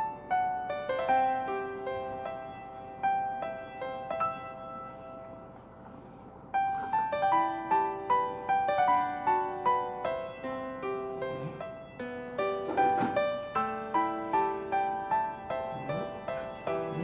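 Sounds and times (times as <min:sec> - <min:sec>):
gentle piano melody: 0:00.0 - 0:17.0.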